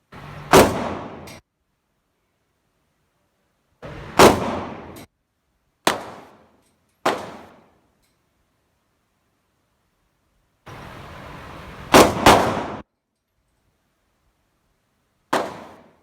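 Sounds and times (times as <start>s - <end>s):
gunshots with echo: 0.5s - 1.4s, 3.8s - 5.1s, 11.8s - 12.8s.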